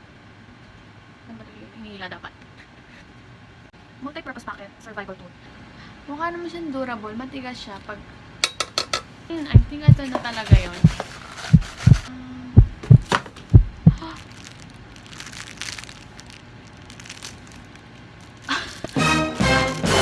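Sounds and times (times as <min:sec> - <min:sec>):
music: 0:18.9 - 0:20.0.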